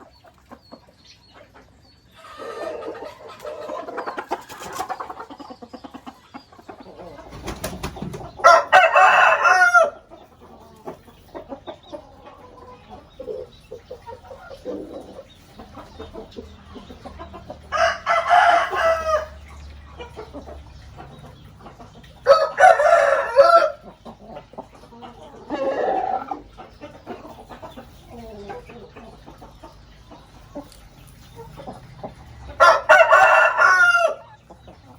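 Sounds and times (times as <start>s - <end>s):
chickens clucking: 0.0s - 34.9s
rooster crowing: 8.4s - 10.0s, 17.7s - 19.4s, 22.3s - 23.8s, 32.6s - 34.3s.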